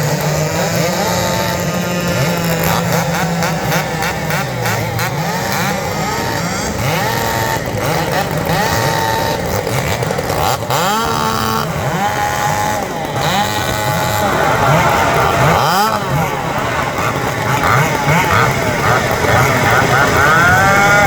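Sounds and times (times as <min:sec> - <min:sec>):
chainsaws revving: 0:00.0 - 0:21.0.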